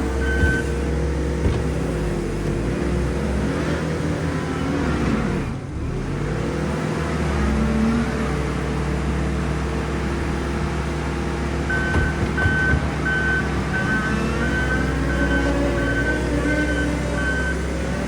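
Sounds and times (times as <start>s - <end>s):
diesel engine running under work: 0.0s - 18.0s
short knocks: 0.1s - 2.7s, 11.7s - 13.8s
high beep: 0.2s - 0.7s, 11.7s - 17.6s.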